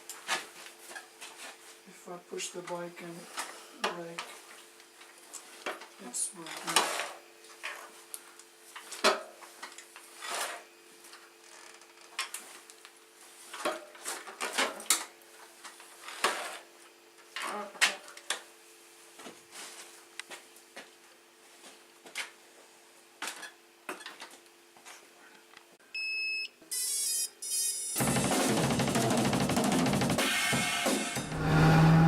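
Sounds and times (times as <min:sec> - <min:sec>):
steady low hum: 0:31.2 - 0:32.0.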